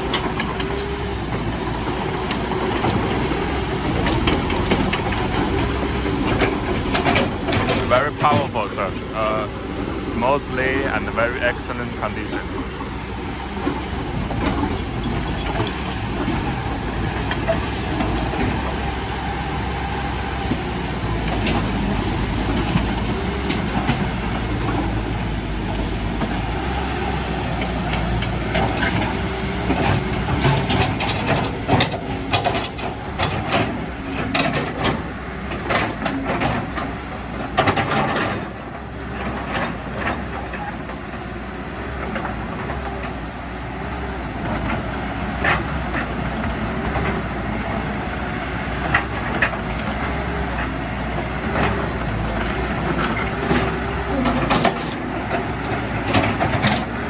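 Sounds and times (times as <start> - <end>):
excavator diesel engine running: 0.0 - 57.0
metal clanks and knocks: 3.9 - 9.2, 27.6 - 38.5, 51.4 - 57.0.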